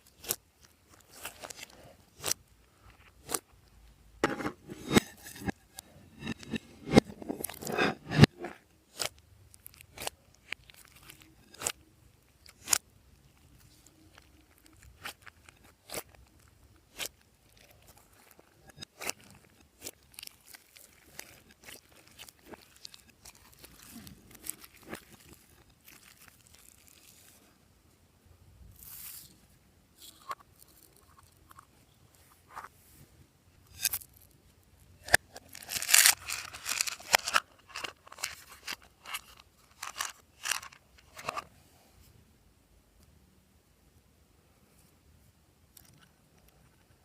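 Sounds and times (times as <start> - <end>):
slime clicking and crackling: 12.4 - 27.3.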